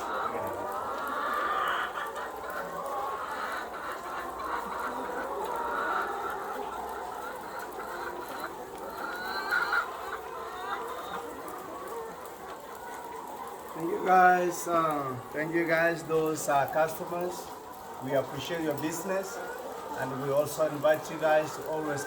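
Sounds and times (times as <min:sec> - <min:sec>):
hens clucking: 0:00.0 - 0:22.0.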